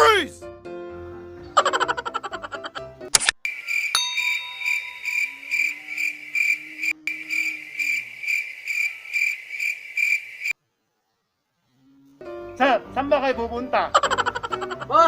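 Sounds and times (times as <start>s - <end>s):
cricket chirping: 3.5s - 10.6s.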